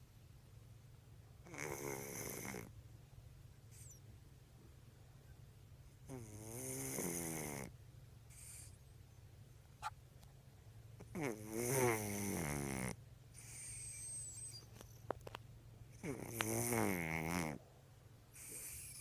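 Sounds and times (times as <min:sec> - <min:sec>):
cat snoring: 0:01.4 - 0:02.7, 0:06.0 - 0:07.7, 0:08.3 - 0:08.8, 0:11.0 - 0:14.6, 0:15.9 - 0:17.6, 0:18.4 - 0:19.0
cat breathing: 0:18.4 - 0:19.0.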